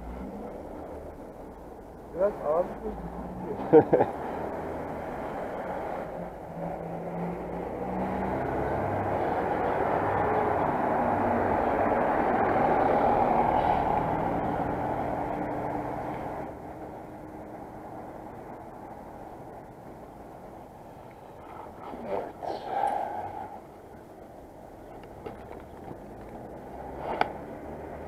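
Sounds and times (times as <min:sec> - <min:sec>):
vehicle passing: 0:02.2 - 0:28.0.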